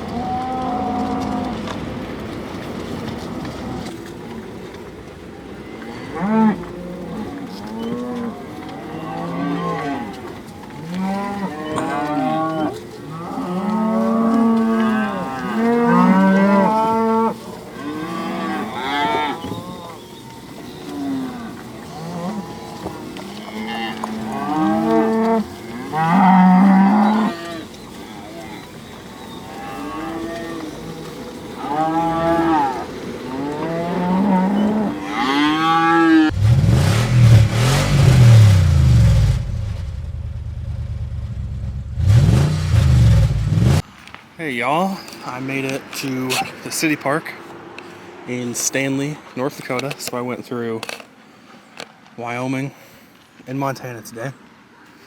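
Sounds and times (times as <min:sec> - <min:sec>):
cattle mooing and bawling: 0:00.0 - 0:01.8, 0:05.6 - 0:36.4.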